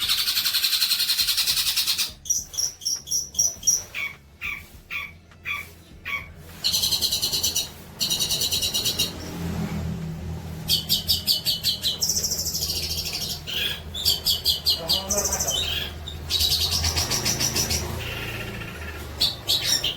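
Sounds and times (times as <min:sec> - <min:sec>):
songbird trills: 0:00.0 - 0:09.4, 0:10.6 - 0:19.9.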